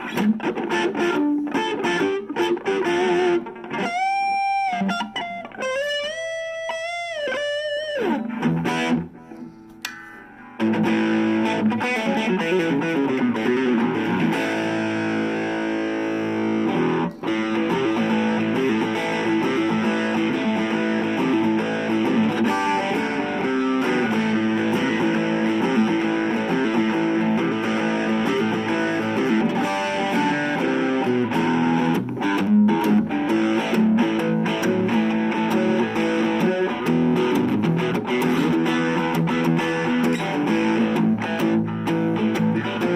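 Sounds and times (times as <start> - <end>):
distorted electric guitar: 0.0 - 42.9.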